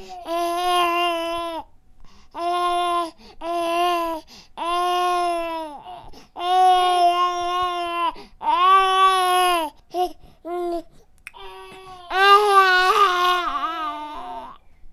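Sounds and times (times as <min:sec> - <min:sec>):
baby crying: 0:00.0 - 0:01.7, 0:02.4 - 0:14.6.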